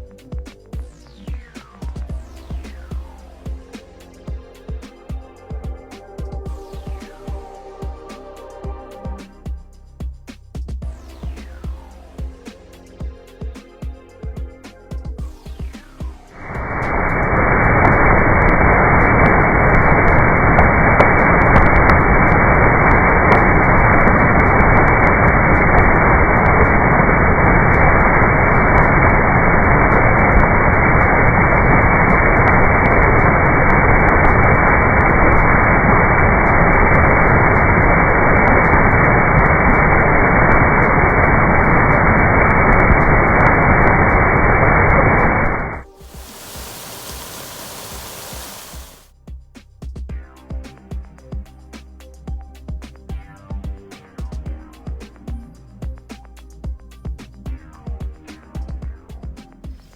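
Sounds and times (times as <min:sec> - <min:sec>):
loud steady rushing noise: 0:15.5 - 0:49.1.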